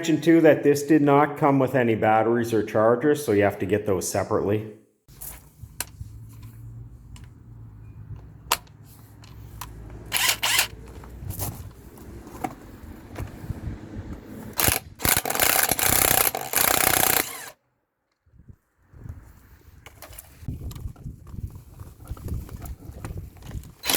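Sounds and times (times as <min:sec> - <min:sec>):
clicks and handling noise: 0:05.1 - 0:07.4, 0:08.1 - 0:13.4, 0:14.1 - 0:18.3, 0:19.8 - 0:23.9
impact wrench bursts: 0:09.4 - 0:11.1, 0:14.4 - 0:17.6.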